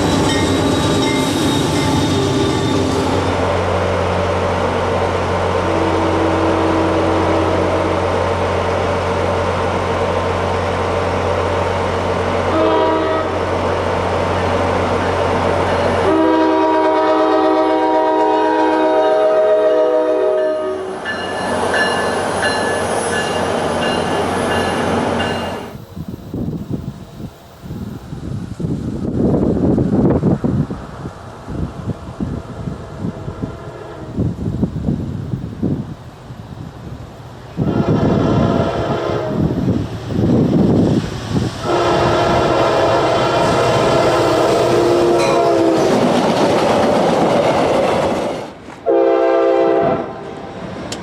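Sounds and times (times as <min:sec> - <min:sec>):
diesel locomotive rumbling: 0:00.0 - 0:51.0
rushing train noise: 0:00.0 - 0:51.0
train air horn: 0:05.6 - 0:08.1, 0:12.5 - 0:13.5, 0:16.0 - 0:21.0, 0:32.9 - 0:34.2, 0:37.6 - 0:39.6, 0:41.6 - 0:46.1, 0:48.8 - 0:50.5.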